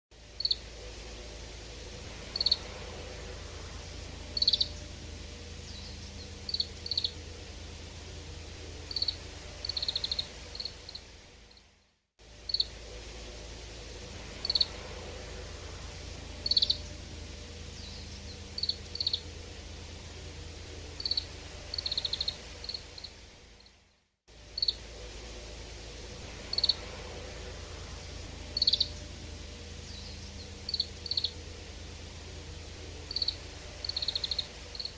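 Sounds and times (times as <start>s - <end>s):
low background noise: 0.1s - 34.9s.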